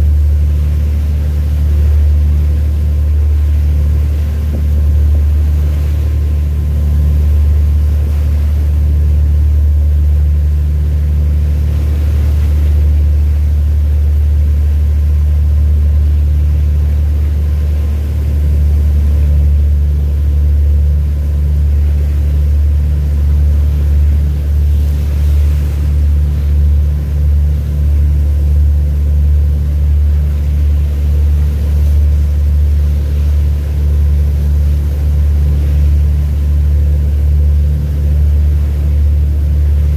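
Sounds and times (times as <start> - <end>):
large engine rumbling: 0.0 - 39.9.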